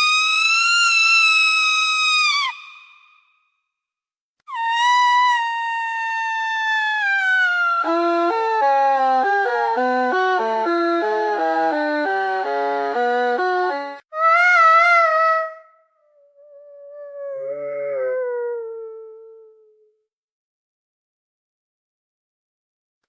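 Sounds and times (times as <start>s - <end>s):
toddler crying: 14.2s - 15.6s, 16.4s - 19.5s.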